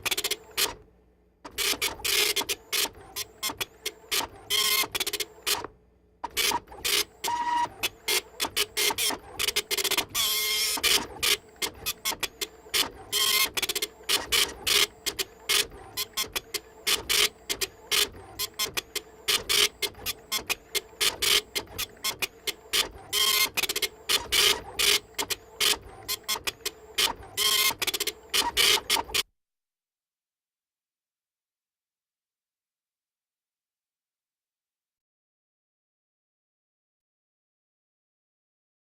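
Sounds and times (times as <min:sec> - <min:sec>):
printer buzzing and clicking: 0:00.0 - 0:00.8, 0:01.5 - 0:29.2
printer hum: 0:00.0 - 0:00.8, 0:01.5 - 0:29.2.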